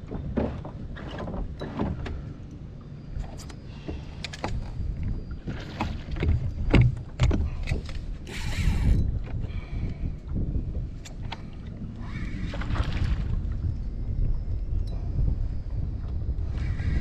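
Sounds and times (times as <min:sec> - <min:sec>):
water sloshing against plastic hull: 0:00.0 - 0:02.5, 0:03.1 - 0:13.8
knocks and thumps on boat: 0:00.0 - 0:17.0.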